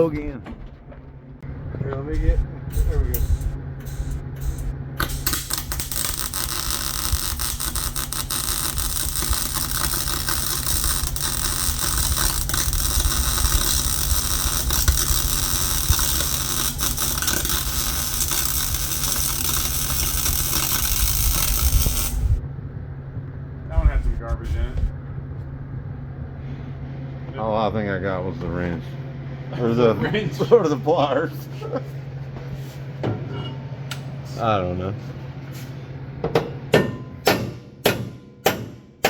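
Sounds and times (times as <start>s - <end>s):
low hum: 0.0s - 37.3s
arc welder crackling sizzle: 2.2s - 22.4s.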